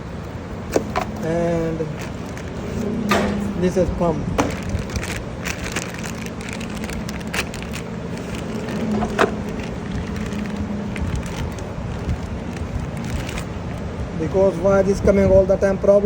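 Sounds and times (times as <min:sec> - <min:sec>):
low mechanical hum: 0:00.0 - 0:16.0
car parts clicking and knocking: 0:00.6 - 0:03.6, 0:04.4 - 0:05.7, 0:07.4 - 0:13.4.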